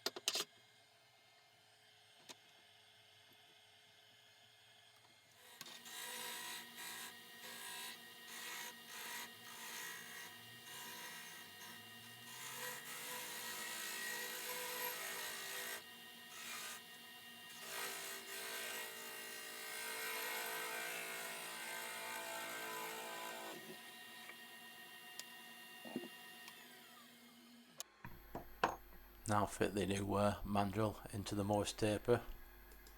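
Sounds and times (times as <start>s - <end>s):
lathe humming: 17.6s - 27.3s.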